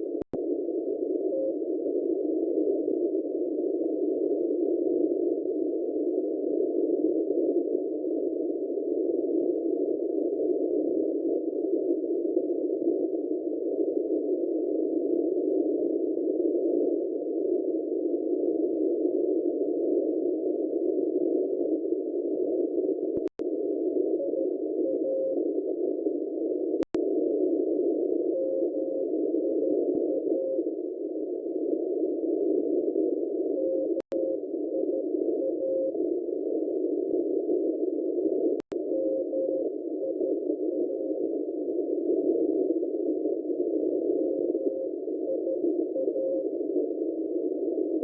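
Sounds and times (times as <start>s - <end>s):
faint morse code tone: 0.0s - 48.0s
radio static hiss: 0.0s - 48.0s.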